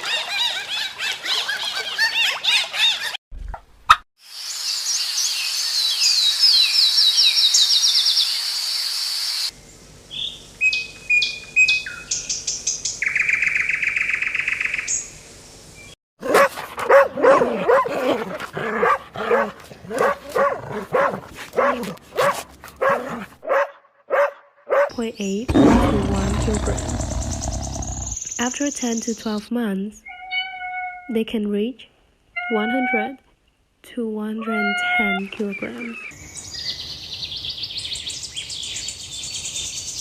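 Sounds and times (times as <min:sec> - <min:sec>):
animal barking calls: 0:16.2 - 0:28.2
birds chirping: 0:24.7 - 0:29.4.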